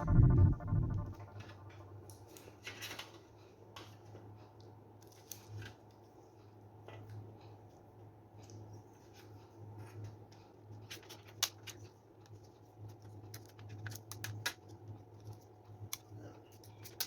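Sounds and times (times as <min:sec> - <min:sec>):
low electrical hum: 0:00.0 - 0:02.2.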